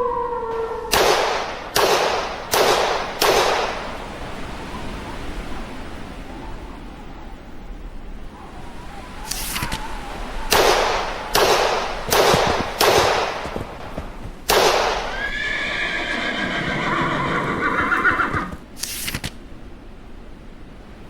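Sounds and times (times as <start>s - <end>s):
short sharp bursts: 9.2s - 15.3s, 17.9s - 19.4s
horse whinnying: 9.2s - 18.6s.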